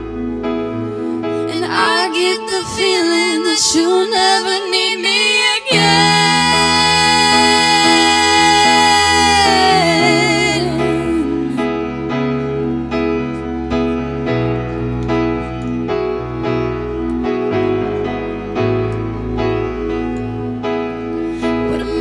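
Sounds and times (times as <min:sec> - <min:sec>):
slow piano piece: 0:00.0 - 0:22.0.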